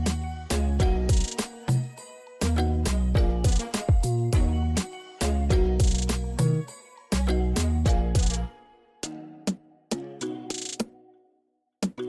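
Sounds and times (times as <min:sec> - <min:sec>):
afrobeat music with heavy bass: 0:00.0 - 0:08.5.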